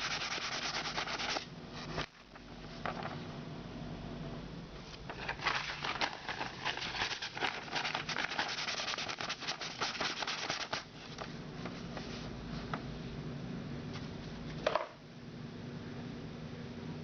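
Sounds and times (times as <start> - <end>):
sandpaper scraping: 0.0 - 2.0, 5.5 - 10.8
low steady hum: 0.0 - 17.0.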